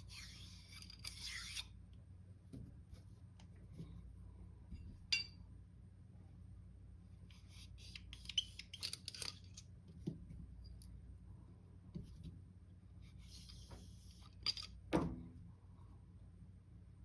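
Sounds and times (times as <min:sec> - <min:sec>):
sharp metal clink: 0:05.1 - 0:05.4.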